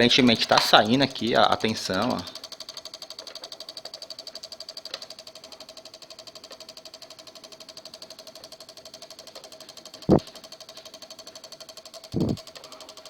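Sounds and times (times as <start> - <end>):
relays chattering clicks: 12.1 - 12.4.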